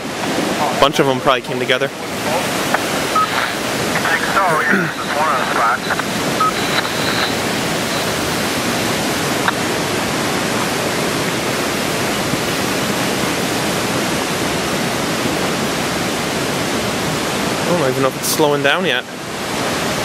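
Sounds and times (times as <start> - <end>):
floodwater rushing: 0.0 - 20.0.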